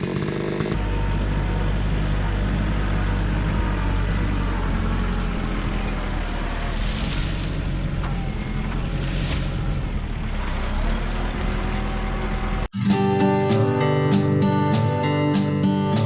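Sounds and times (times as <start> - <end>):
petrol engine running: 0.0 - 6.5, 12.9 - 16.0.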